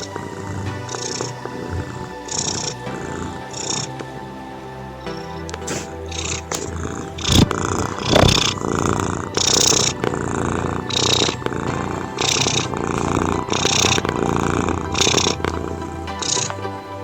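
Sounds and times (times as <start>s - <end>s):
cat purring: 5.7s - 16.6s.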